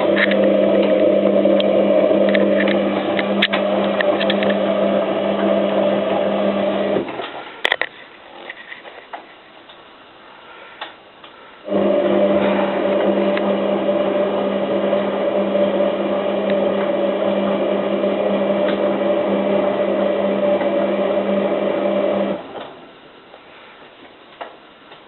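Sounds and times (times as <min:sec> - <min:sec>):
washing machine motor hum: 0:00.0 - 0:07.2, 0:11.6 - 0:23.3.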